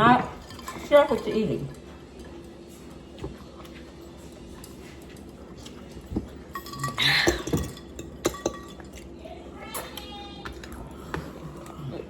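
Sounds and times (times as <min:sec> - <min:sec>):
dishes and cutlery clicking: 0:00.0 - 0:02.9, 0:03.6 - 0:09.2.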